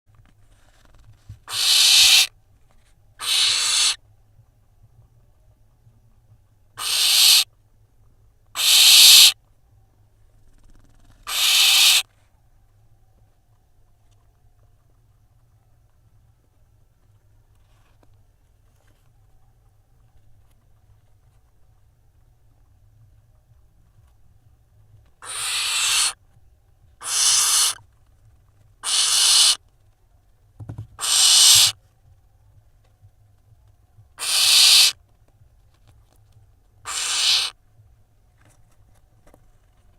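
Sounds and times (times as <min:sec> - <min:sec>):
owl chicks hissing: 0:01.5 - 0:02.3, 0:03.2 - 0:04.0, 0:06.8 - 0:07.5, 0:08.6 - 0:09.4, 0:11.2 - 0:12.0, 0:25.2 - 0:26.2, 0:27.0 - 0:27.8, 0:28.8 - 0:29.6, 0:31.0 - 0:31.8, 0:34.2 - 0:35.0, 0:36.9 - 0:37.6.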